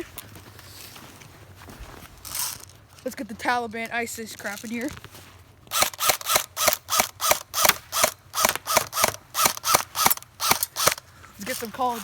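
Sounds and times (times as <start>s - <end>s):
airsoft rifle shots: 5.7s - 11.0s
gearbox whir: 5.7s - 11.0s.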